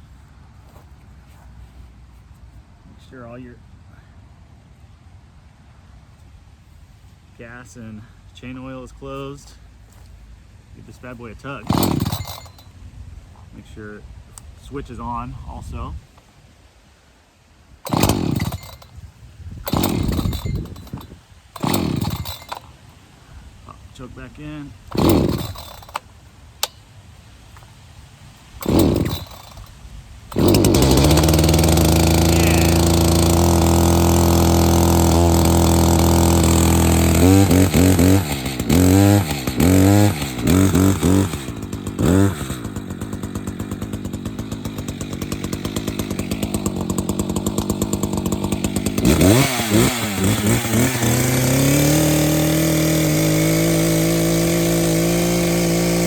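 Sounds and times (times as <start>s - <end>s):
chainsaw starting and revving: 11.0s - 12.8s, 17.8s - 26.9s, 28.6s - 56.0s.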